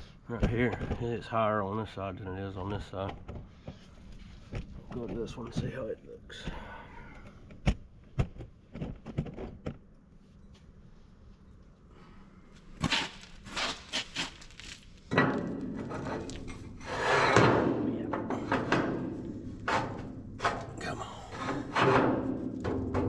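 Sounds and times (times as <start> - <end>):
knocks and clunks: 0.3 - 1.2, 2.6 - 9.9, 15.1 - 23.0
scraping rubbing noise: 12.8 - 15.0, 15.8 - 17.8.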